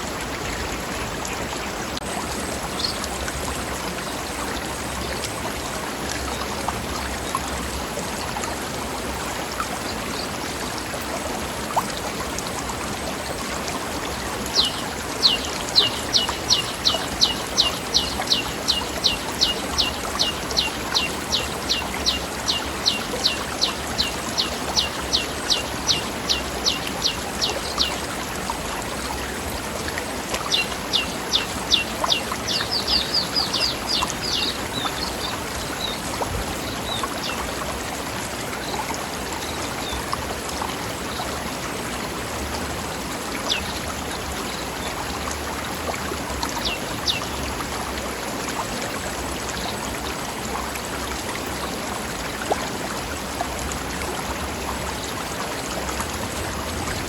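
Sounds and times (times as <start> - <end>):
stream rushing over rocks: 0.0 - 57.0
bird chirping: 30.5 - 36.0.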